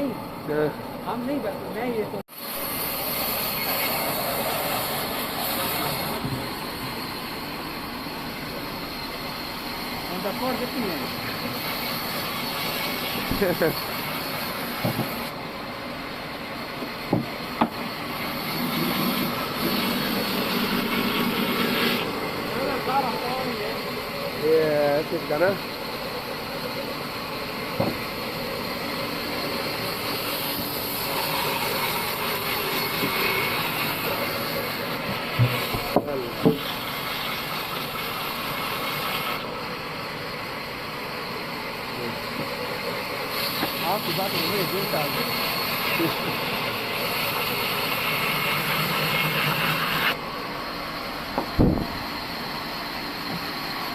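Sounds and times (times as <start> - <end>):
sawmill machinery running: 0.0 - 53.9
steady hum: 0.0 - 53.9
sharp knocks: 17.1 - 17.8, 27.8 - 28.0, 51.4 - 52.0.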